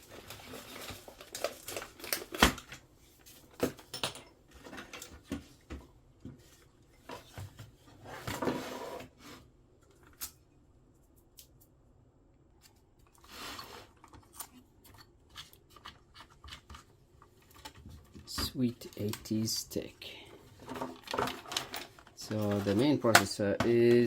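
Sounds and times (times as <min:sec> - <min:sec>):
small clicks and handling knocks: 0:20.6 - 0:24.0.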